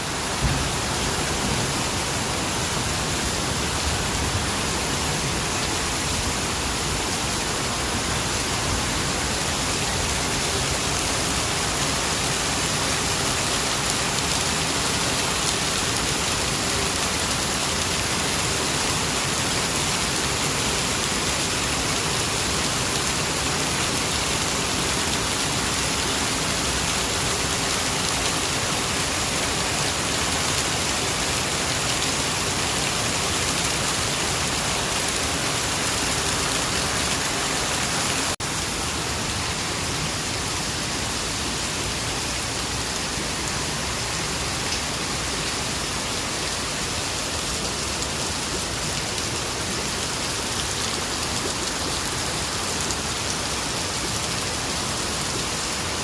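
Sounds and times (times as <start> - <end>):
heavy rain spattering: 0.0 - 56.0.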